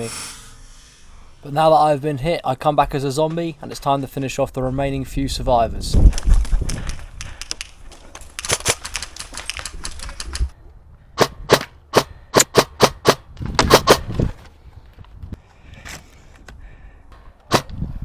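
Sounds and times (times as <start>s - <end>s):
airsoft gun shots: 11.2s - 14.1s, 17.5s - 17.8s.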